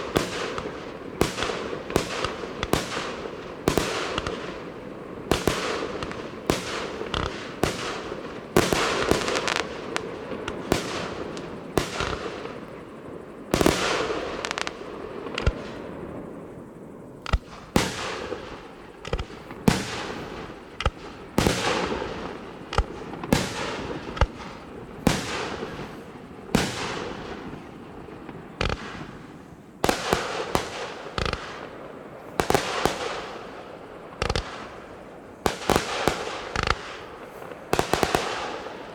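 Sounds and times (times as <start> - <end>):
firework crackling: 0.0 - 38.9.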